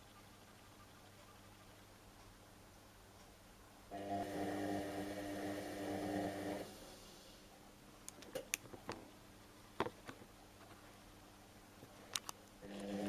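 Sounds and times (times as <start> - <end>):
washing machine motor humming: 3.9 - 6.8, 12.6 - 13.0.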